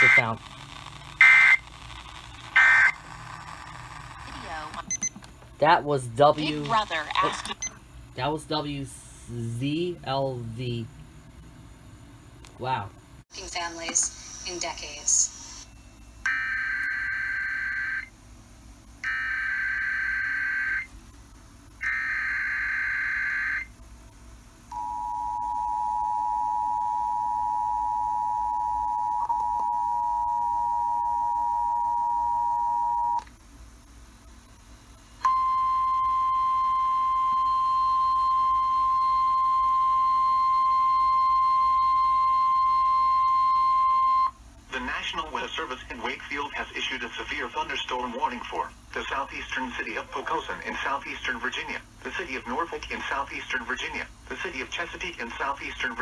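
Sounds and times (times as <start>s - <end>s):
buzzy data bursts: 0.0s - 5.0s, 13.3s - 24.9s, 30.1s - 56.0s
two-tone attention signal: 35.3s - 44.3s.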